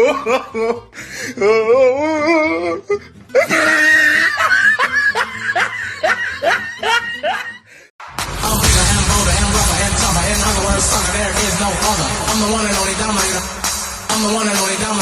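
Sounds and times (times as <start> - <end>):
loud noisy sound: 8.0 - 15.0.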